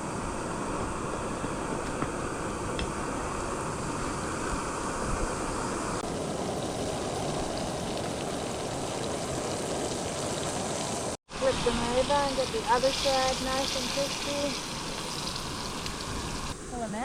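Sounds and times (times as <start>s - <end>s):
fish sizzling in oil: 6.6s - 16.6s.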